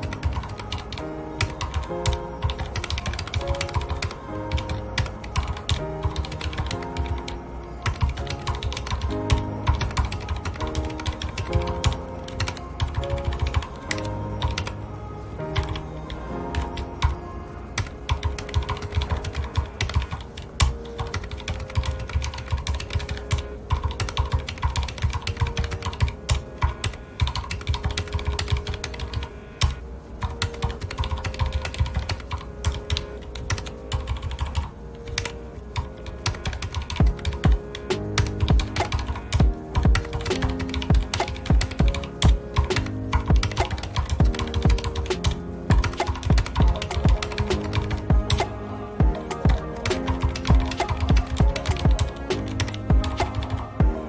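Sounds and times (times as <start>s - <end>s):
fast typing on mechanical keyboard: 0.0s - 14.7s, 17.8s - 54.0s
soft background music: 0.0s - 54.0s.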